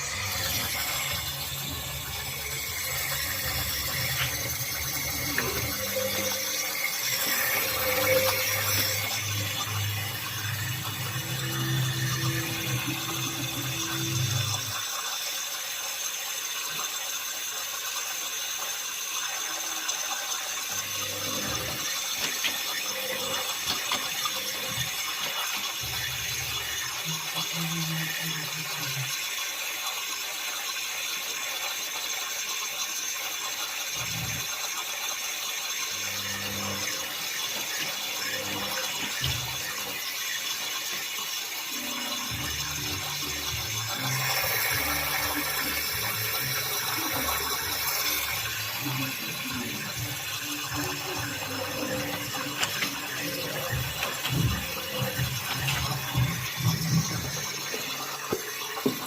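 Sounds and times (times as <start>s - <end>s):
low motor hum: 0.0s - 14.8s
water moving in washing machine drum: 0.0s - 15.0s, 19.9s - 29.4s, 35.6s - 59.0s.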